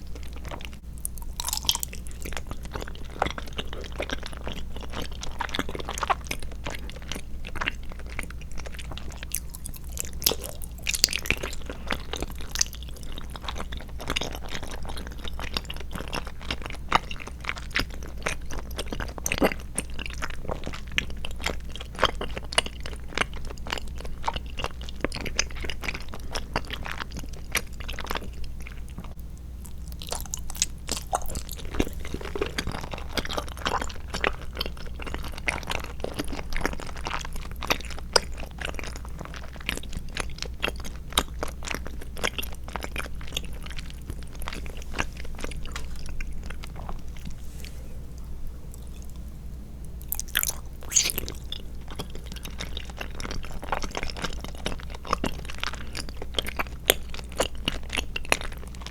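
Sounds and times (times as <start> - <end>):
faint low hum: 0.0 - 58.9
wet chewing mouth clicks: 1.0 - 6.4, 50.0 - 58.9.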